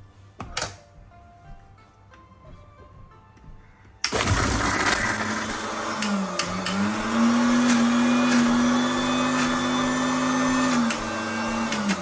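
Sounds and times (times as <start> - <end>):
mixer grinder motor running: 4.1 - 12.0.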